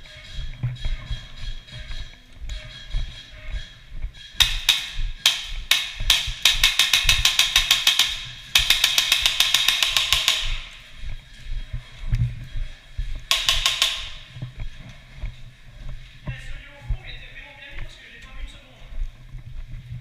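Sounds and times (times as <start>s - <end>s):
airsoft gun firing: 4.4s - 10.7s, 13.3s - 14.3s.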